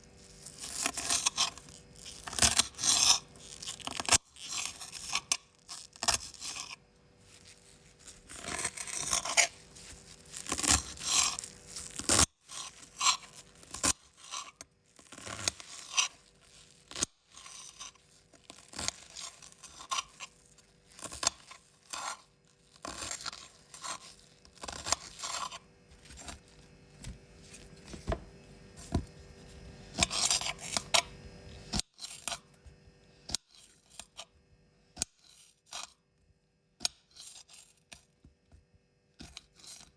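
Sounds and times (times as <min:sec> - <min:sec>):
knife cutting vegetables: 0:00.4 - 0:06.8, 0:07.4 - 0:32.5, 0:39.2 - 0:39.9.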